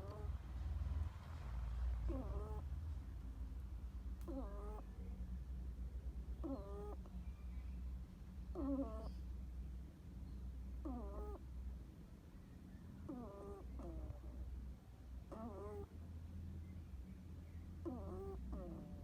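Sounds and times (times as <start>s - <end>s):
steady low hum: 0.0s - 19.0s
hedgehog snoring: 2.1s - 2.6s, 17.9s - 18.9s.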